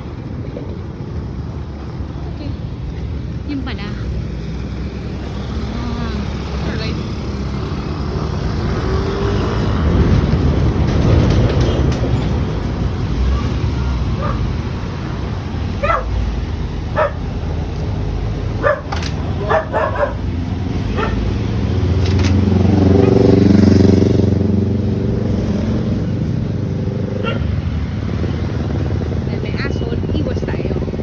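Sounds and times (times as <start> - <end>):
road traffic rumble: 0.0 - 31.0
vehicle passing: 0.0 - 31.0
dog barking: 14.1 - 14.6, 15.7 - 16.2, 16.9 - 17.4, 18.6 - 21.4, 27.2 - 27.6.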